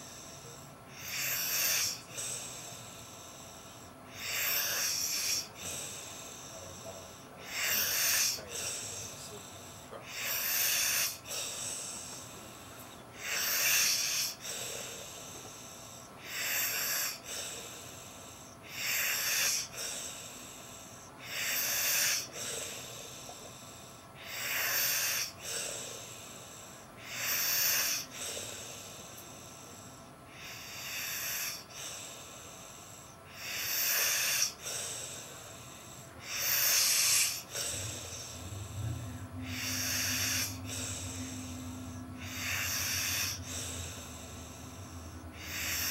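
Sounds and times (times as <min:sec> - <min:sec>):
man snoring: 0:00.0 - 0:45.9
low steady hum: 0:34.8 - 0:45.9.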